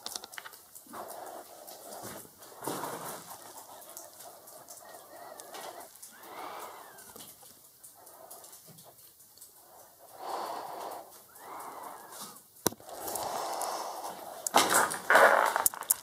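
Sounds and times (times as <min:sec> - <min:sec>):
person breathing heavily: 0:10.0 - 0:14.9.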